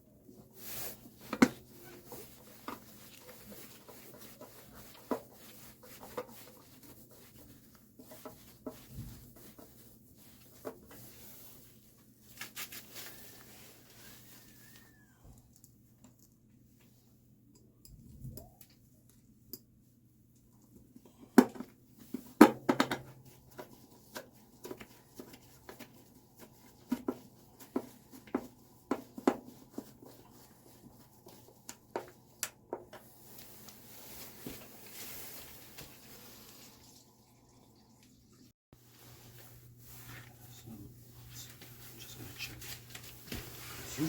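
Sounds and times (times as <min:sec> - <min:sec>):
soft rustling: 0:33.0 - 0:36.9, 0:38.8 - 0:44.0.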